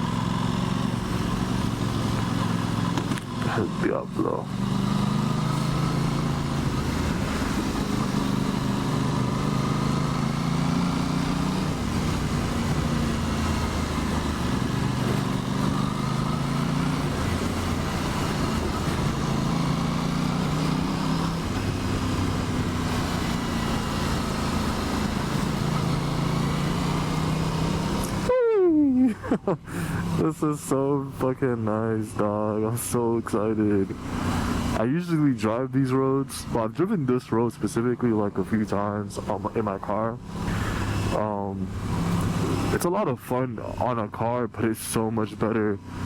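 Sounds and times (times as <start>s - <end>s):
motorcycle engine running: 0.0s - 28.3s, 39.2s - 42.8s.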